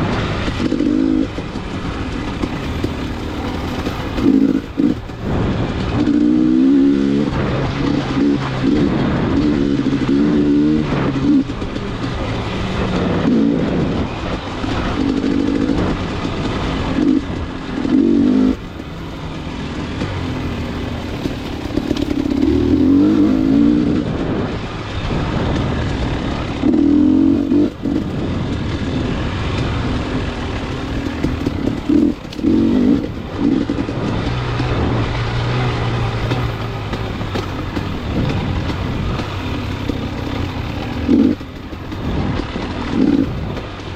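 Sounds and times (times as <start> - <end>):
vehicle engine and road noise: 0.0 - 43.9.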